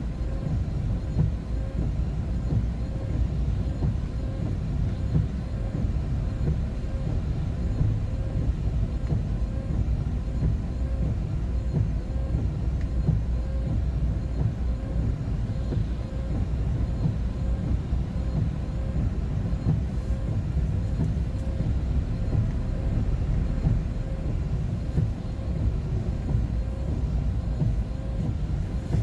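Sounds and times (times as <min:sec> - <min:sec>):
vehicle engine and road noise: 0:00.0 - 0:29.0.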